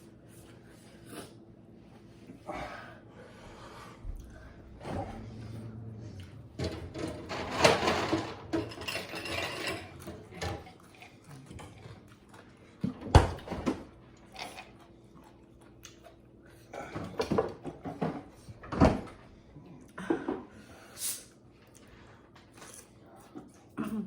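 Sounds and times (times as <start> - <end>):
dishes and cutlery clinking: 6.6 - 11.7.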